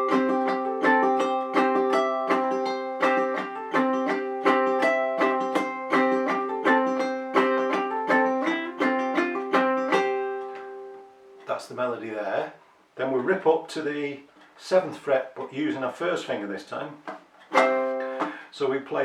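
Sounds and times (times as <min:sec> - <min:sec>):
ukulele played clawhammer style: 0:00.0 - 0:11.6, 0:16.9 - 0:19.0.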